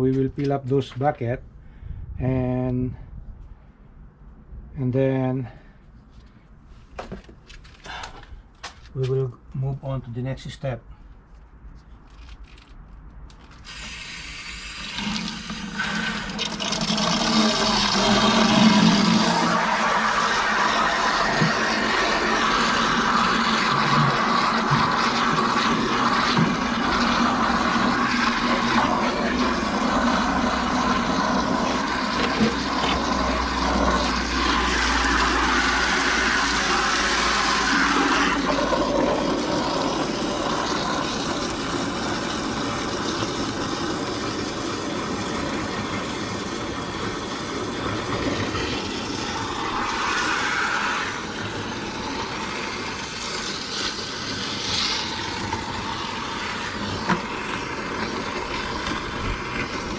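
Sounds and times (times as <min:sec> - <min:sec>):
water running into a bucket: 0:13.6 - 0:59.9.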